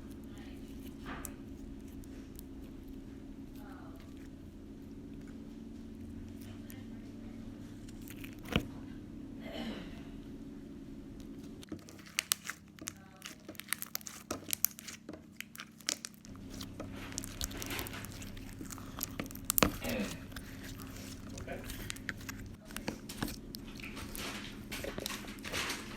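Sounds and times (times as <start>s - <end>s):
steady low hum: 0.0s - 25.9s
slime crackling and popping: 11.7s - 25.8s.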